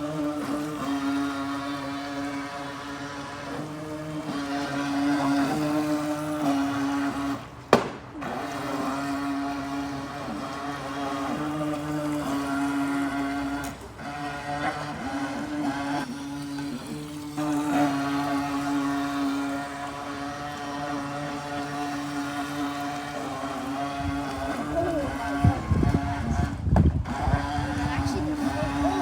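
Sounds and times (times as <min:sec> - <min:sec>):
model boat motor humming: 0:00.0 - 0:29.0
sharp knock: 0:07.8 - 0:08.0.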